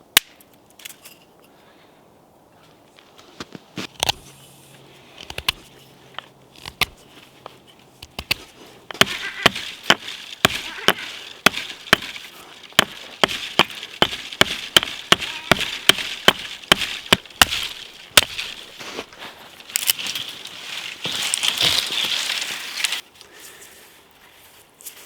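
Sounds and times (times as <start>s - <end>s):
wood being chopped: 6.6s - 7.0s, 8.0s - 19.2s
rough scraping hiss: 6.9s - 23.9s.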